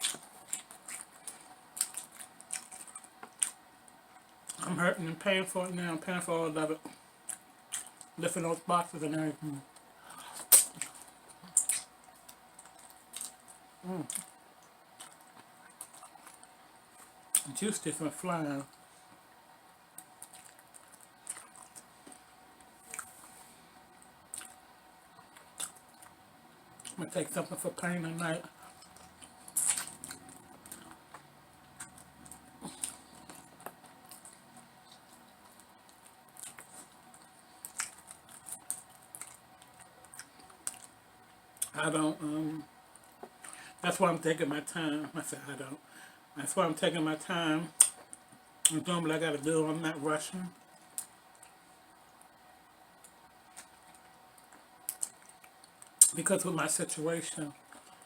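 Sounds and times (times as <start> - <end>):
chewing clicks and crunches: 0.0 - 3.6, 20.0 - 22.2, 24.3 - 24.6, 28.6 - 40.9, 53.0 - 56.2
wet clicks and crackles: 53.0 - 56.2.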